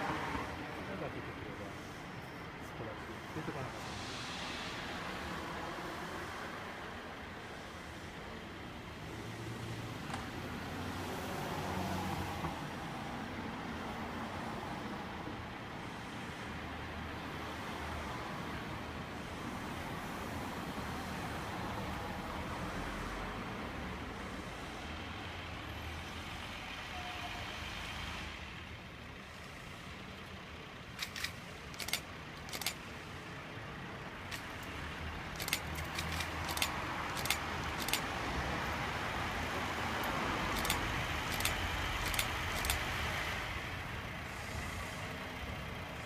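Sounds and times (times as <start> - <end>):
diesel engine drone: 0.0 - 46.0
rumble of moving rail vehicle: 0.0 - 46.0
sharp clicks: 31.0 - 32.8, 34.3 - 38.2, 40.0 - 42.9.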